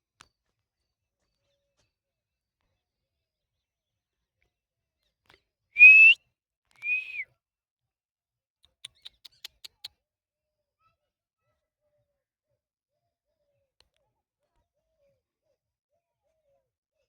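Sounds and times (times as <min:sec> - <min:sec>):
clear whistled notes: 0:05.8 - 0:06.2, 0:06.8 - 0:07.2
short sharp chirps: 0:05.8 - 0:06.2, 0:06.8 - 0:07.2.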